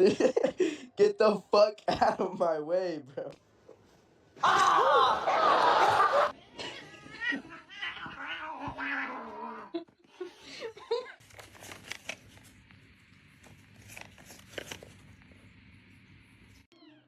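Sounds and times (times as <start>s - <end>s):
cat meowing: 6.4s - 9.7s
cat yowling: 6.4s - 9.7s.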